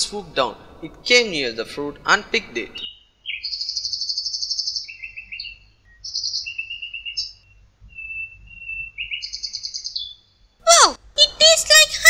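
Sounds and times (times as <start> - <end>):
rapid trilled bird chirps: 2.7 - 10.6
whistled bird notes: 2.8 - 10.4.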